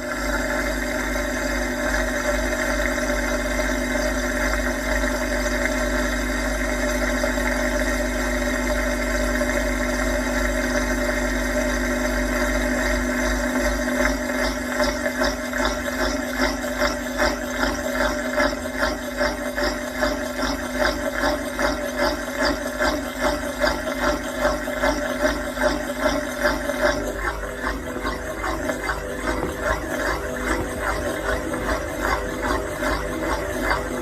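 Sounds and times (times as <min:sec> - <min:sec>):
washing machine motor hum: 0:00.0 - 0:34.0
drum swishing and thumping: 0:27.8 - 0:34.0.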